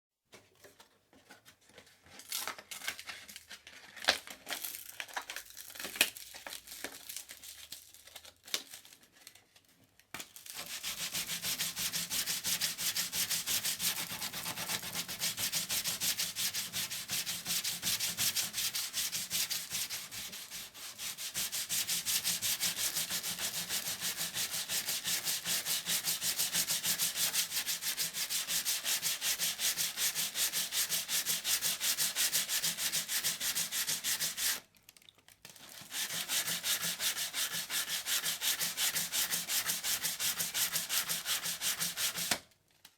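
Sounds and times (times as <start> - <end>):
sandpaper sanding strokes: 10.6 - 34.6, 35.9 - 42.4.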